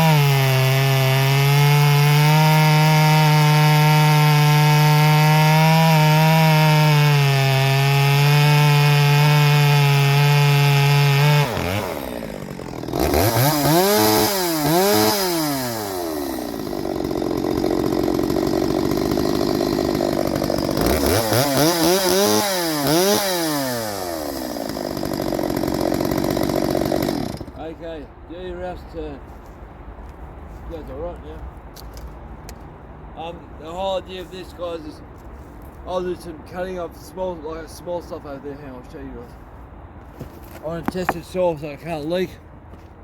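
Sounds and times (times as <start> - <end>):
chainsaw cutting wood: 0.0 - 27.7
chainsaw revving and idling: 0.0 - 27.8.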